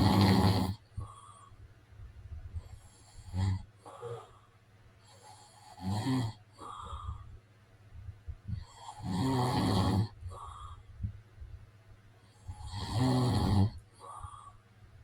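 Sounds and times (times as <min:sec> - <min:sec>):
man snoring: 0:00.0 - 0:01.2, 0:03.0 - 0:04.4, 0:05.2 - 0:07.0, 0:08.6 - 0:10.6, 0:12.4 - 0:14.4
quiet breathing: 0:00.0 - 0:15.0.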